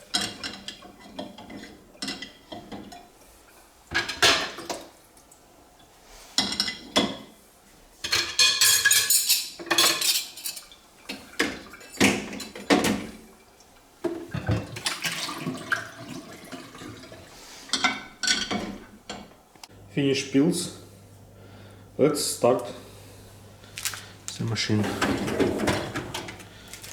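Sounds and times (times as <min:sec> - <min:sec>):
dishes clinking and clattering: 0:00.0 - 0:03.2, 0:03.9 - 0:04.9, 0:06.4 - 0:07.3, 0:08.0 - 0:19.3, 0:24.8 - 0:26.9.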